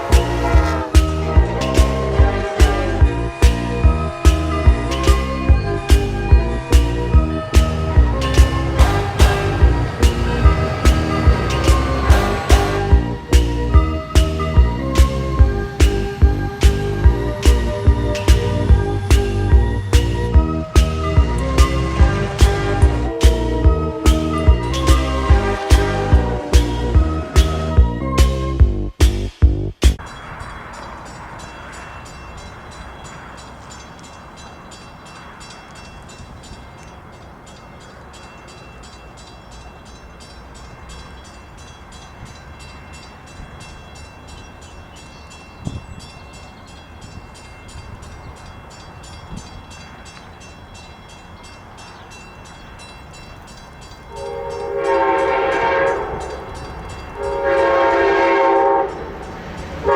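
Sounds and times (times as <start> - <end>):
train air horn blasts: 0.0 - 14.8, 15.6 - 28.0, 54.1 - 59.9
wind rumble on microphone: 0.0 - 28.9, 45.5 - 50.4.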